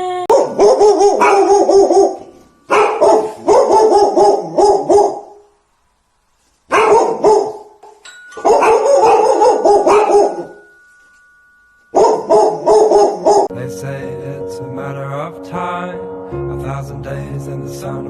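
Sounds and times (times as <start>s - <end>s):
dog barking: 0.3s - 5.4s, 6.7s - 7.8s, 8.4s - 10.6s, 12.0s - 13.5s.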